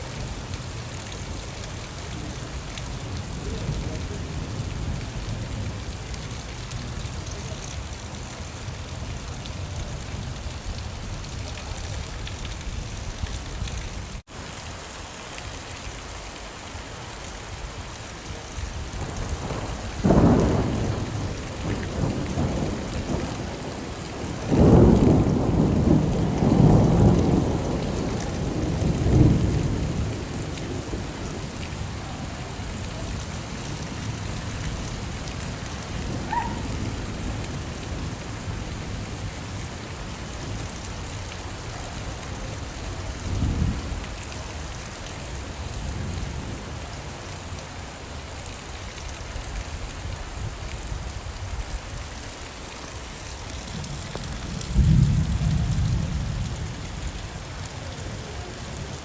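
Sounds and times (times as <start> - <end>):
steady rain falling: 0.0 - 59.0
thunder rumbling: 18.8 - 44.2, 53.6 - 57.1.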